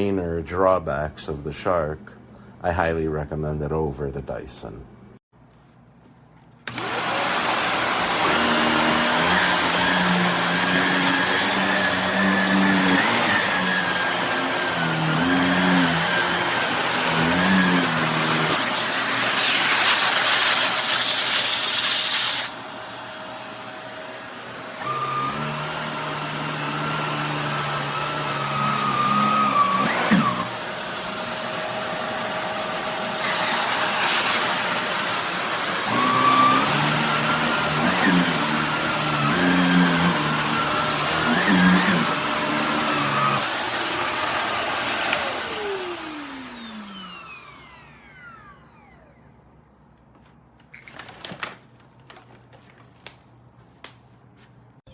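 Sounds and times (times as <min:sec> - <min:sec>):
vacuum cleaner running: 0:06.6 - 0:49.4.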